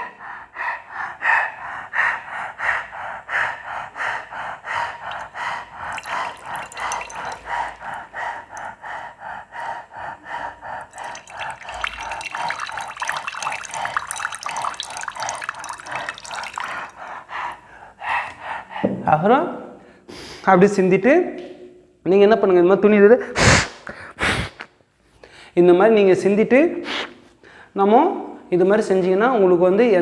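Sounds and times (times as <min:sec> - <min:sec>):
water dripping into a basin: 0:04.8 - 0:09.2, 0:10.8 - 0:17.6
quick breathing through mouth: 0:23.2 - 0:25.6.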